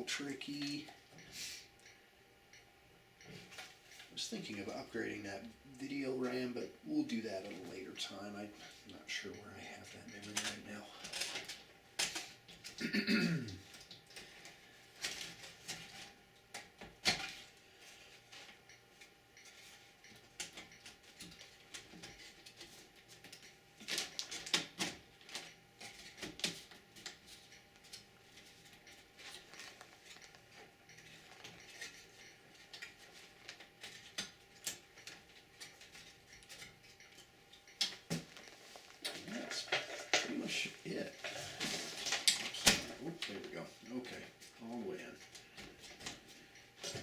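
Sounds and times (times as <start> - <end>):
computer parts clicking and tapping: 9.1 - 12.8, 18.3 - 47.0.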